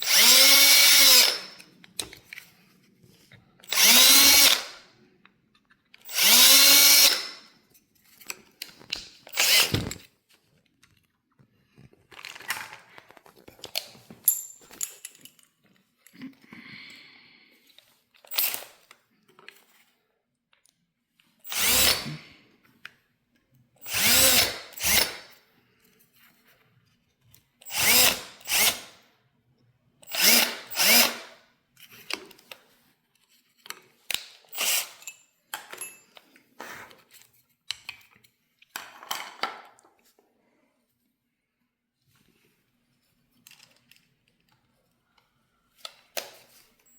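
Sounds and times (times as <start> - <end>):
electric drill whirring: 0.0 - 1.6, 3.7 - 4.8, 6.1 - 7.4, 9.3 - 10.0, 21.5 - 22.2, 23.8 - 25.3, 27.7 - 29.0, 30.1 - 31.4, 34.5 - 35.0.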